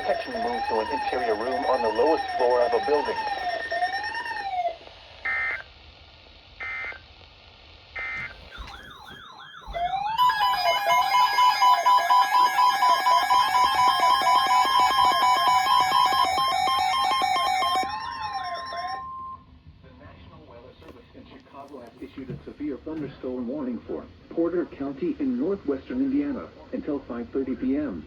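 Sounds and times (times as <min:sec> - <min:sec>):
warbling alert tone: 0:00.0 - 0:04.7, 0:08.6 - 0:19.4
loud warbling siren-like tone: 0:00.0 - 0:04.8, 0:08.5 - 0:19.4
short digital data bursts: 0:10.2 - 0:19.1.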